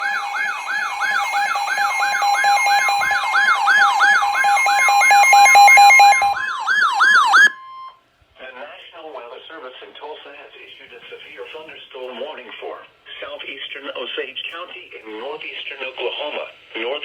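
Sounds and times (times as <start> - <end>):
steady piercing alarm tones: 0.0 - 8.0
wailing siren: 0.0 - 8.0.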